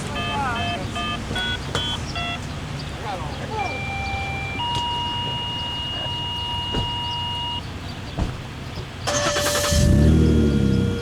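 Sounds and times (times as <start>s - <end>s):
alert tones: 0.1s - 2.4s, 3.6s - 7.6s.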